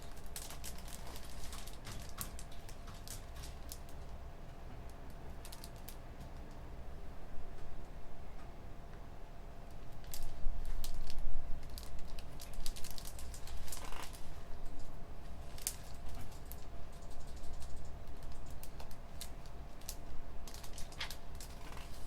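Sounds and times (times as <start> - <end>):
low hum of room machinery: 0.0 - 22.0
keyboard typing: 16.4 - 18.6.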